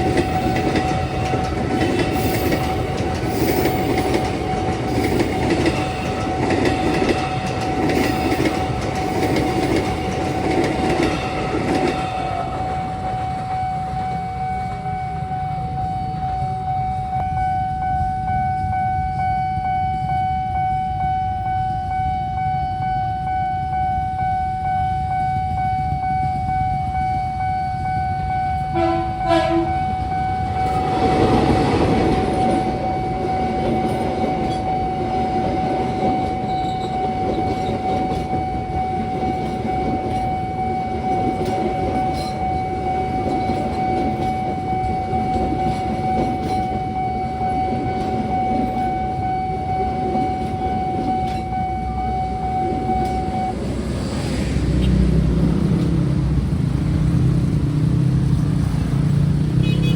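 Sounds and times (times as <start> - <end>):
train wheels rumbling on rails: 0.0 - 19.3, 24.0 - 59.9
level-crossing warning alarm: 0.0 - 59.9
train horn blasts: 28.6 - 32.0, 59.6 - 59.9.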